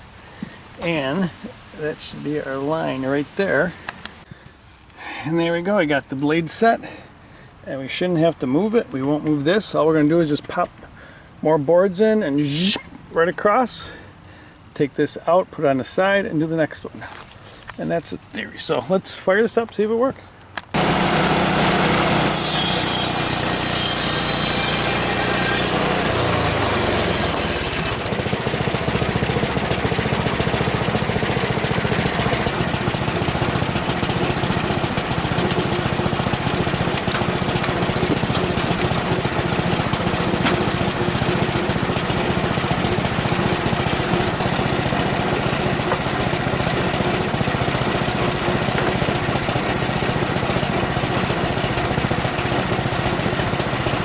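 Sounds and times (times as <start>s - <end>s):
sawmill gas engine running: 12.4s - 12.8s, 20.7s - 54.0s
band saw cutting boards: 20.7s - 54.0s.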